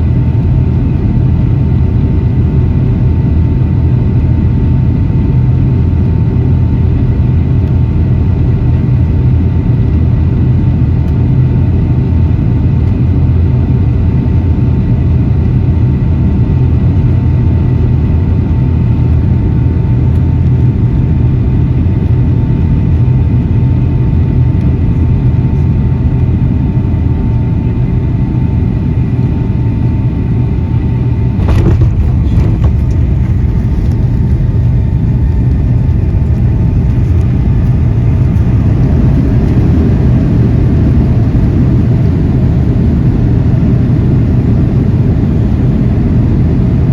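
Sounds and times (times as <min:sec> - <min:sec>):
aircraft engines and airflow rumble: 0:00.0 - 0:46.9
steady whine: 0:00.0 - 0:46.9
knocks and rattles: 0:31.4 - 0:33.4.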